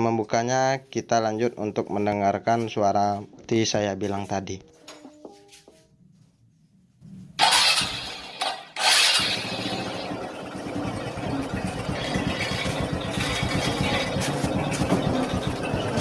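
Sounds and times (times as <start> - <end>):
motorcycle engine running roughly: 7.4 - 16.0.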